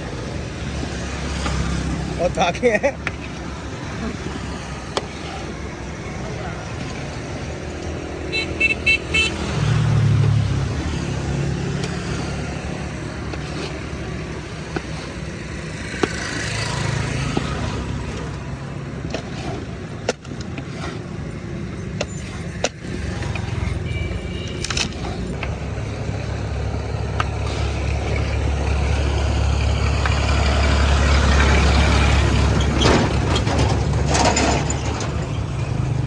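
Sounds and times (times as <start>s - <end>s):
road traffic rumble: 0.0s - 36.0s.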